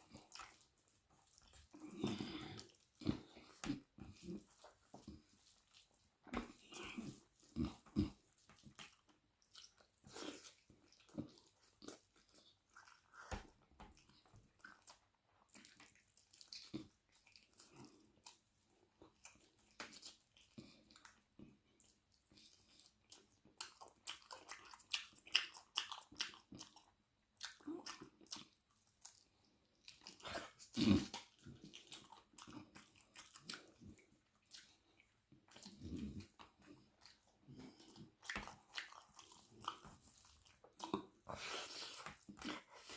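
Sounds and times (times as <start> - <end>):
wet chewing: 0.0 - 42.9
food crunching: 19.1 - 42.9
lip smacking: 19.1 - 42.9.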